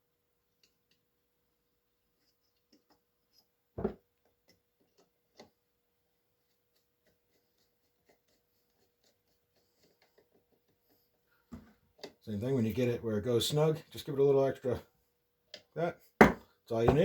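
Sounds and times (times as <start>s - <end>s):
knock: 3.8s - 4.0s, 16.2s - 17.0s.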